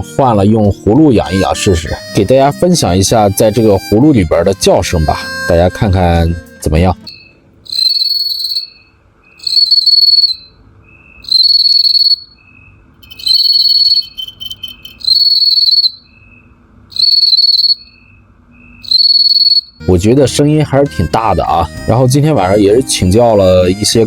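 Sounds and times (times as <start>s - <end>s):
cricket ringing trill: 1.0s - 24.0s
faint low chirp: 7.0s - 19.8s.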